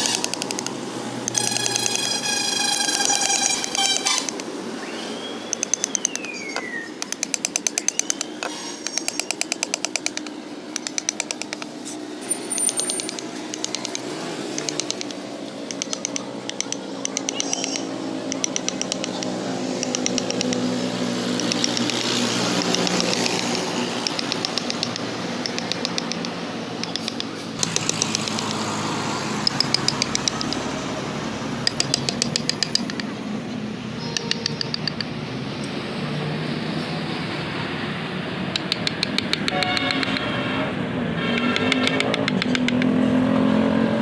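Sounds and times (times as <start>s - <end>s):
mallet tapping chisel into wood: 5.6s - 11.7s, 29.4s - 30.6s, 31.7s - 33.1s, 34.2s - 35.1s, 38.6s - 40.2s, 41.5s - 42.9s.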